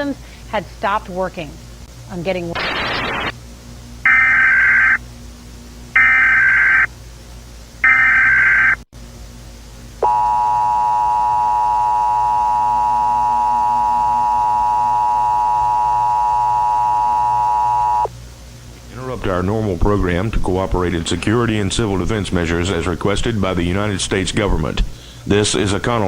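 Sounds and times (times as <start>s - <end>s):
screechy data tones: 2.5s - 3.4s, 4.0s - 5.0s, 6.0s - 6.9s, 7.8s - 8.8s, 10.4s - 18.1s.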